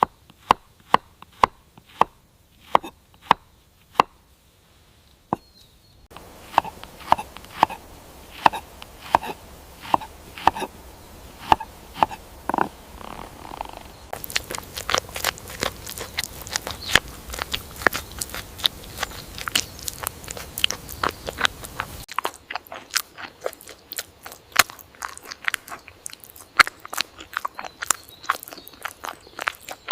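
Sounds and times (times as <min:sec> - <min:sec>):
low background hum: 0:05.5 - 0:29.9
crunchy biting and chewing: 0:06.1 - 0:10.7, 0:11.4 - 0:29.9.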